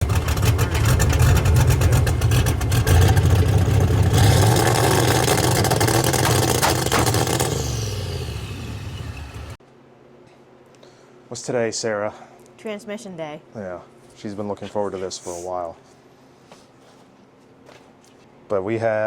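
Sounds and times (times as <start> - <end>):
vehicle engine revving: 0.0 - 9.6.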